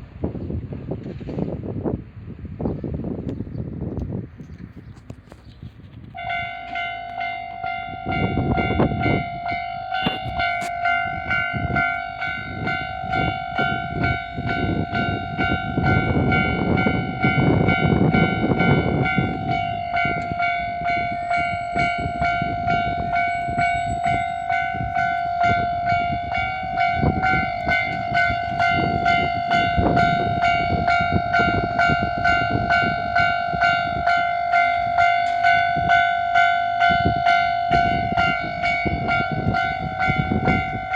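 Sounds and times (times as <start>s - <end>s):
train passing with rushing: 0.0s - 40.9s
train wheels clattering on rails: 0.6s - 1.8s, 4.0s - 40.9s
level crossing warning bell: 6.2s - 40.9s.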